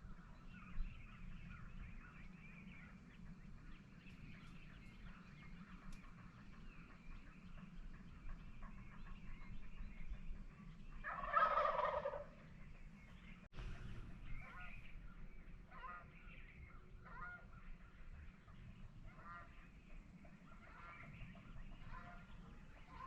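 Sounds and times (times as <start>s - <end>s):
faint turkey calls: 0.0s - 23.0s
turkey gobbling: 5.0s - 23.0s.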